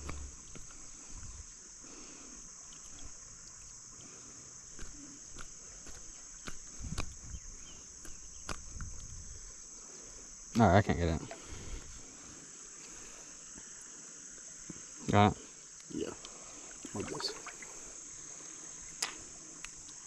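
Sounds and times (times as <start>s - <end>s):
insects trilling: 0.0s - 20.0s.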